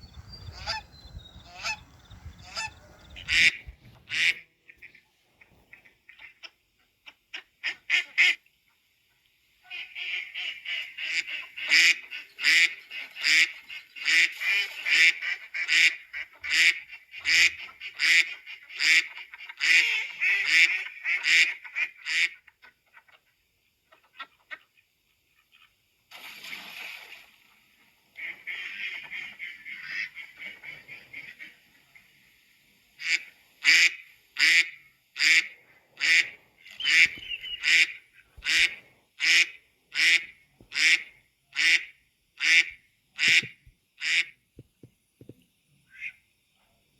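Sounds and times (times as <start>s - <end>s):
geese and ducks chattering: 0.0s - 8.2s, 9.7s - 23.3s, 28.2s - 31.7s, 33.0s - 44.3s
geese honking: 0.2s - 4.4s, 33.0s - 44.3s.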